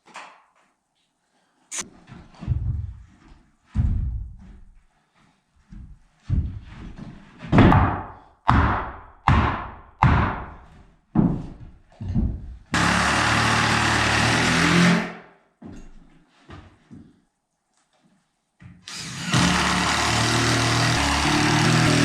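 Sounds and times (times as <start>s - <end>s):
power tool running: 12.8s - 15.1s, 18.9s - 22.0s.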